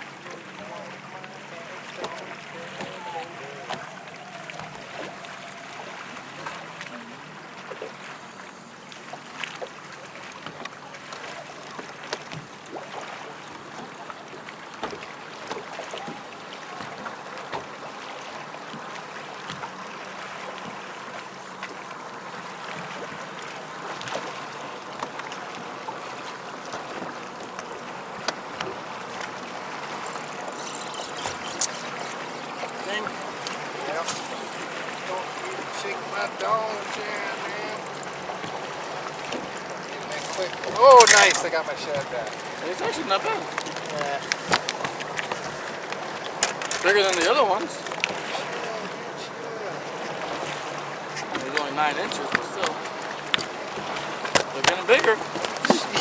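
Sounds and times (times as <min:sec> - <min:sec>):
waves lapping against boat hull: 0:00.0 - 0:56.0.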